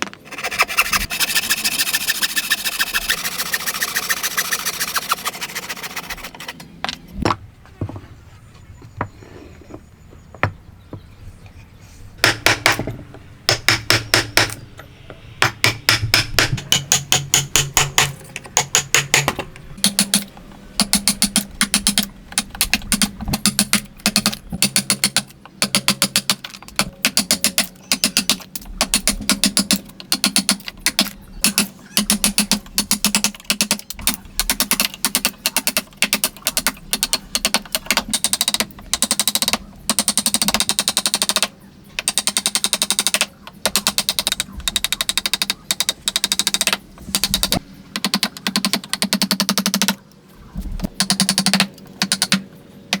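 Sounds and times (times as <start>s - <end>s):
repeated short strokes on wood: 0.0s - 6.6s.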